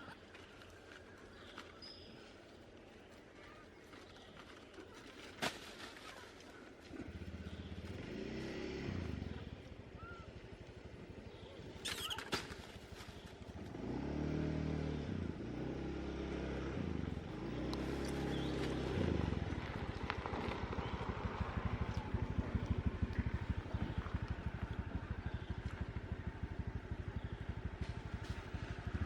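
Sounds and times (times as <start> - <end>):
vehicles passing: 6.6 - 29.0.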